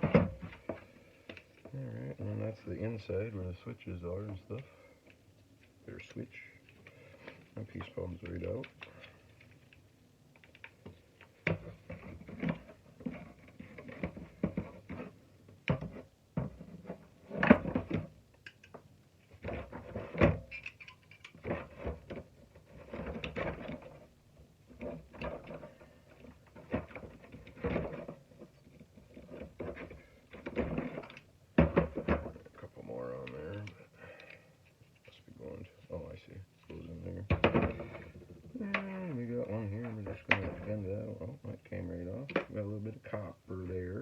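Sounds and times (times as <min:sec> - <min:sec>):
plastic parts clicking and rattling: 0:06.6 - 0:24.1, 0:24.7 - 0:35.1.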